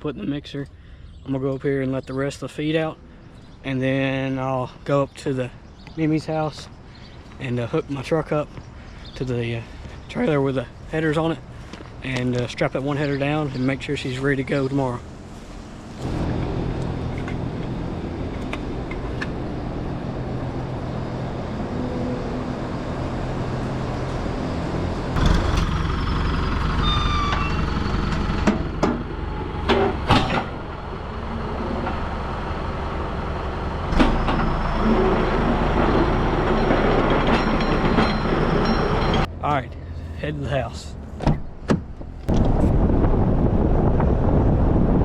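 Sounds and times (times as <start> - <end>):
vehicle engine running: 11.0 - 44.7
clanks and knocks: 28.1 - 30.6, 33.9 - 39.3.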